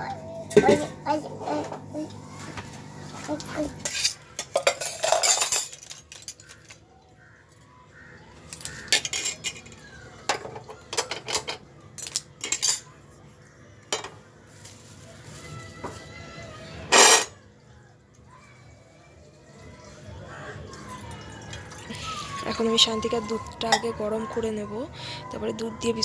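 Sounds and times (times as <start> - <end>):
metal pots clattering: 0.5 - 1.9, 3.4 - 6.8, 8.5 - 12.9
metal pots clinking and clanking: 0.5 - 1.9, 3.3 - 6.8, 8.5 - 12.9, 13.9 - 14.2, 16.9 - 17.4, 23.6 - 24.0.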